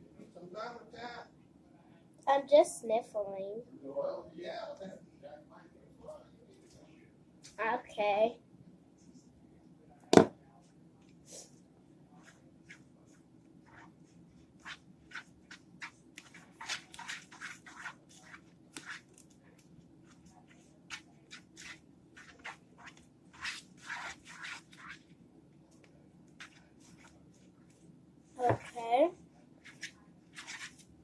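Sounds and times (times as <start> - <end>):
slime being stirred in a bowl: 12.2 - 31.0.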